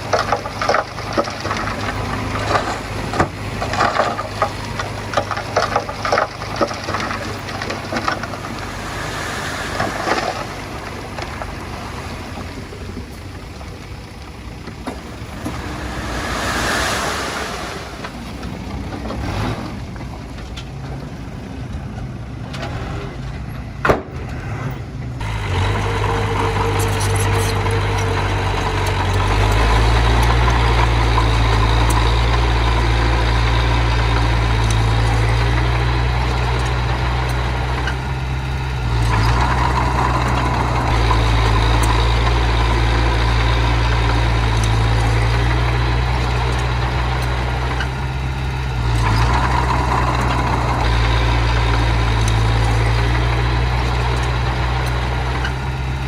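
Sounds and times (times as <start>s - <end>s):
diesel engine running: 0.0s - 56.0s.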